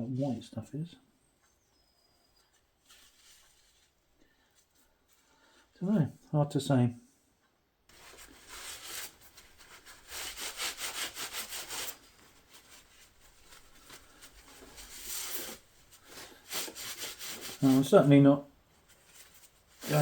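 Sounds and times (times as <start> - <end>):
rubbing strokes on rusty metal: 7.9 - 17.9, 19.1 - 20.0.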